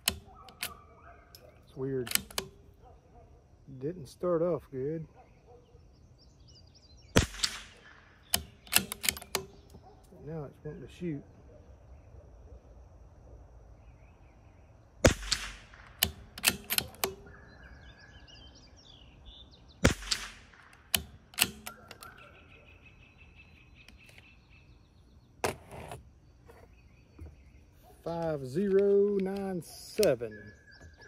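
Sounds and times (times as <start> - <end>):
rifle bolt clicking: 0.0 - 2.8, 7.3 - 9.8, 15.2 - 17.3, 20.0 - 22.4, 28.2 - 30.2
rifle shots: 7.2 - 9.6, 15.0 - 17.3, 19.8 - 22.1.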